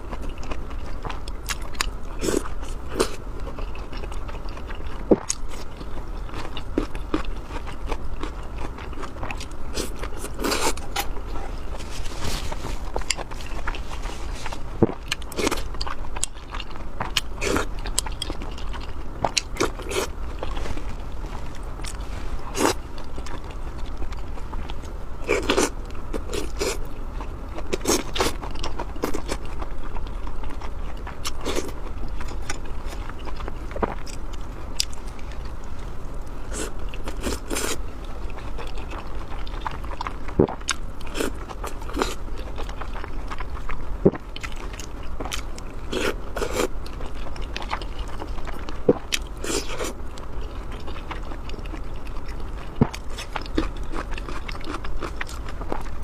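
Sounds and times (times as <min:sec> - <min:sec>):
person chewing food: 0:00.0 - 0:56.0
steady low hum: 0:00.0 - 0:56.0.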